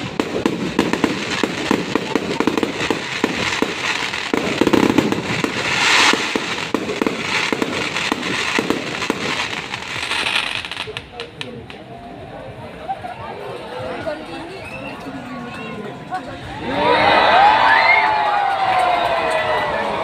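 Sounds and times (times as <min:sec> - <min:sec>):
fireworks hiss: 0:00.0 - 0:11.4
fireworks crackling bangs: 0:00.0 - 0:11.8.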